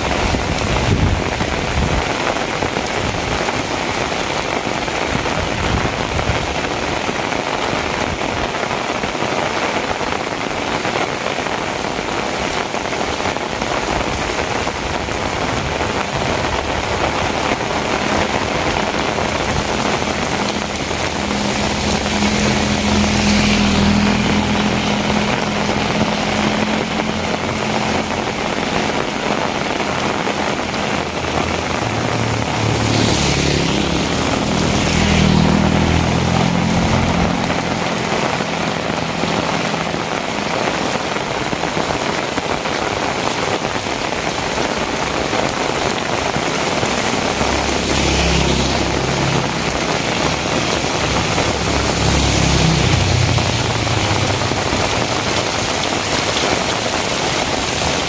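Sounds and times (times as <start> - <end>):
heavy rain falling: 0.0 - 58.0
vehicle engine hum: 14.1 - 58.0.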